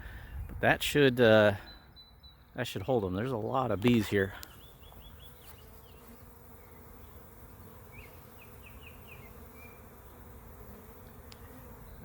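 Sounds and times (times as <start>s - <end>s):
bee swarm humming: 2.7s - 12.0s.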